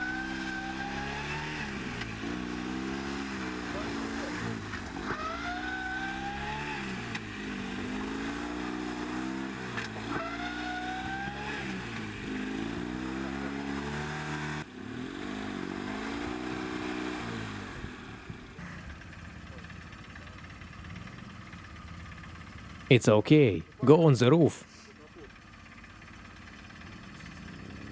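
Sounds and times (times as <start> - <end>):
car engine revving: 0.0 - 18.2.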